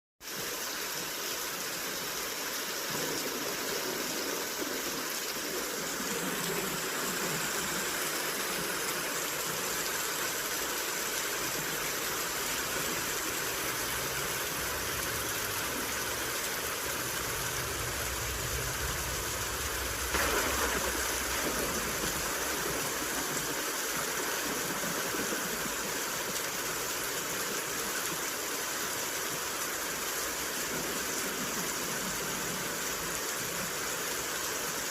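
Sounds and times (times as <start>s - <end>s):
steady rain falling: 0.2s - 34.9s
low thunder rumble: 11.4s - 23.6s
thunder crack: 12.4s - 23.6s.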